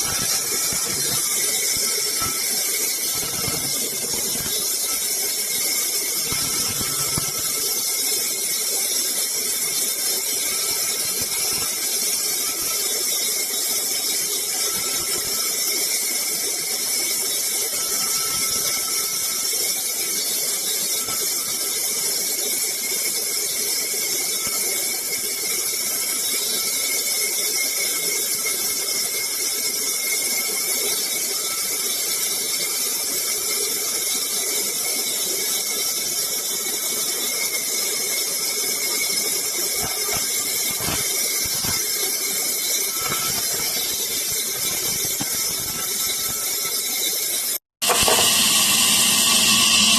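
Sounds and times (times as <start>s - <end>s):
woodworking machine whining: 0.0s - 22.2s, 38.4s - 49.9s.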